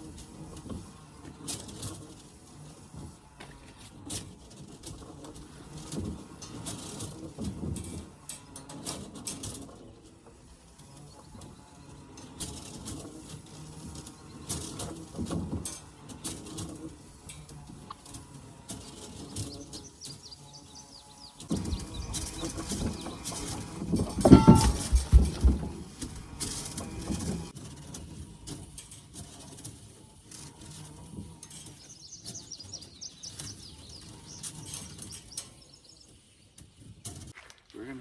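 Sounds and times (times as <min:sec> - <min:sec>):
loud rough rustling: 0:18.0 - 0:28.1
birds chirping: 0:18.7 - 0:26.4, 0:31.6 - 0:36.9
brief tone: 0:24.3 - 0:25.1.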